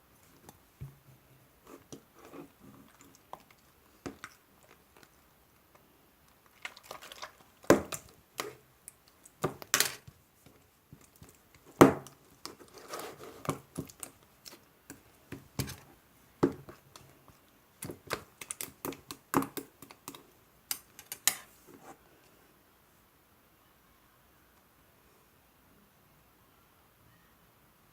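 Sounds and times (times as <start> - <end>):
slime squishing: 1.7 - 9.8.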